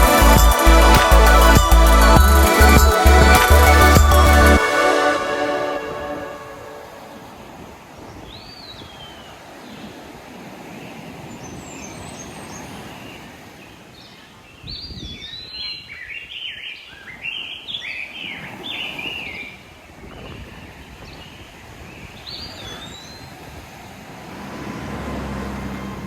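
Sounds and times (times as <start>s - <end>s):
ocean surf washing: 4.5s - 8.1s, 23.3s - 26.0s.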